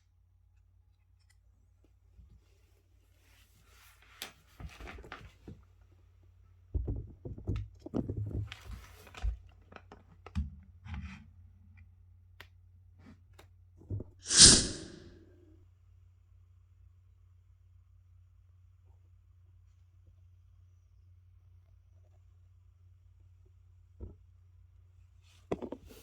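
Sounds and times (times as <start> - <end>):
loud sharp snap with hiss: 14.2 - 15.1.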